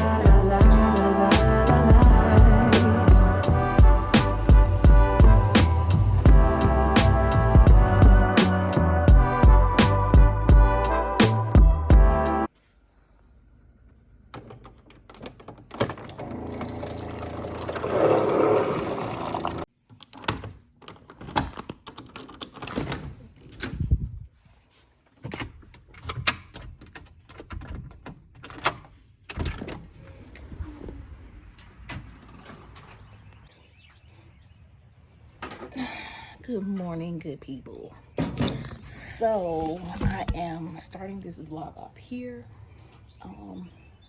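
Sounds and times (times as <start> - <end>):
steady hum: 0.0 - 12.5.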